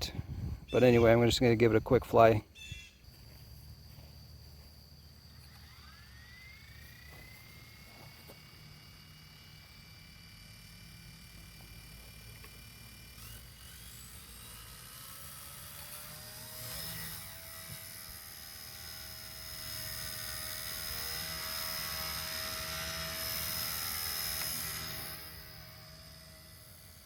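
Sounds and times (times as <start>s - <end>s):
toy helicopter motor whine: 2.6s - 27.0s.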